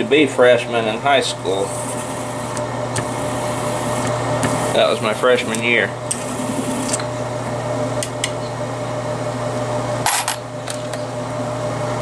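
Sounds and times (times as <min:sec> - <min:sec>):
electric motor humming: 0:00.6 - 0:07.9.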